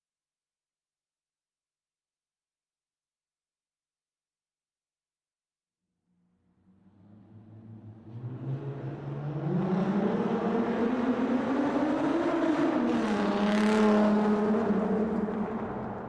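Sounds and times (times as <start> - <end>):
car engine accelerating in tunnel: 6.2 - 16.0.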